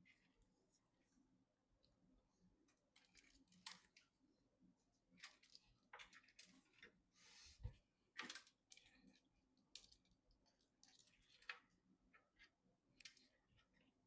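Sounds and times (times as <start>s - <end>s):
clicks and rustles of computer parts: 2.7s - 4.1s, 5.2s - 7.0s, 8.1s - 12.4s, 13.0s - 13.5s.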